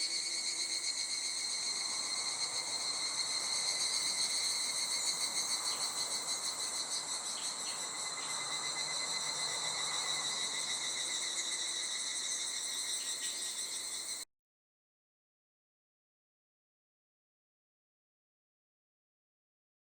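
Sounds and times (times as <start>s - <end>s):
insects trilling: 0.0s - 14.2s.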